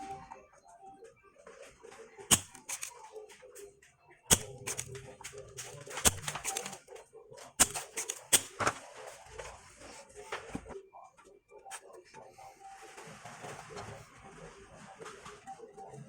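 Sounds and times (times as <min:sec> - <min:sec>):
tools clicking and knocking: 0:02.3 - 0:03.0, 0:04.3 - 0:06.8, 0:07.6 - 0:08.7.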